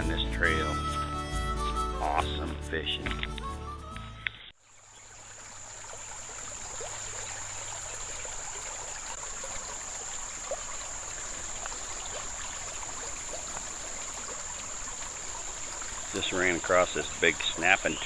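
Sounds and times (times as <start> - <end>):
river water rushing: 5.0 - 18.0.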